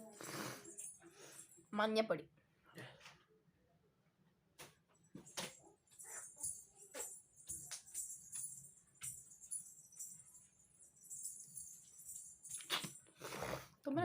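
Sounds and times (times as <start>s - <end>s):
jingling tambourine-like percussion: 0.0s - 1.7s, 5.0s - 13.3s.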